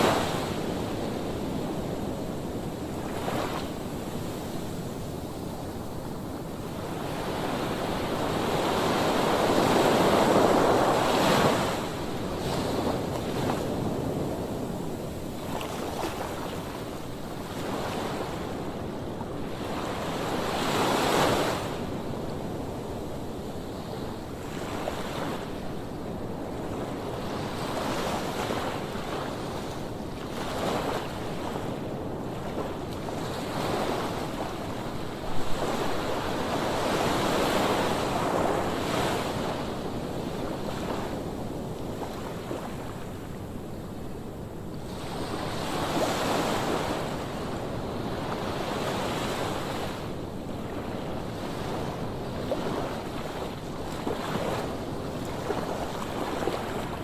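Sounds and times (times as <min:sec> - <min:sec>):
wind: 0:00.0 - 0:57.0
waves rushing: 0:33.4 - 0:39.6.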